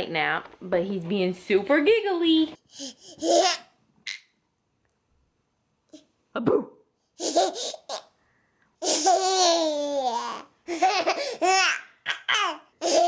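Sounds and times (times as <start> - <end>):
baby giggling: 2.8 - 4.3, 7.2 - 8.1, 8.8 - 13.0.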